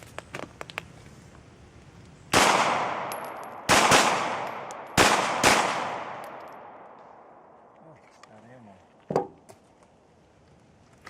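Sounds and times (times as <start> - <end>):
pistol shots with echo: 2.3 - 7.5.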